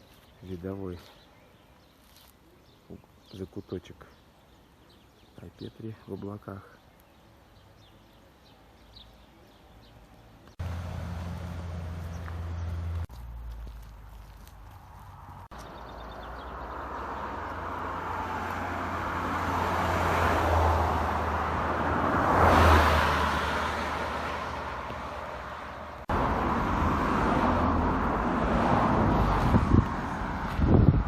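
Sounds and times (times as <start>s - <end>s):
steady road noise: 0.0s - 31.0s
car passing by: 10.5s - 13.1s, 15.8s - 30.8s.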